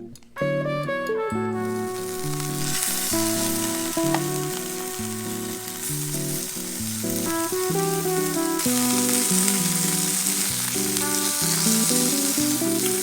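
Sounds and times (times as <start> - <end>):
food sizzling in a pan: 1.6 - 13.0.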